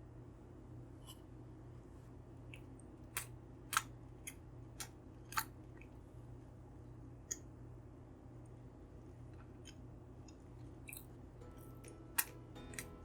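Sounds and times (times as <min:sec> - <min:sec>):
faint steady hum: 0:00.0 - 0:13.0
short crisp clicks: 0:11.6 - 0:13.0.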